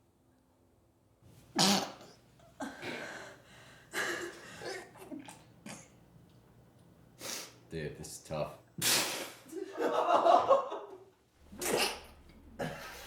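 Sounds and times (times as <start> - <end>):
cough-like bursts: 1.6 - 2.2, 5.6 - 6.0, 11.5 - 13.0
stifled sneeze: 1.6 - 2.2, 8.8 - 9.5, 11.5 - 13.0
person breathing: 2.6 - 4.8.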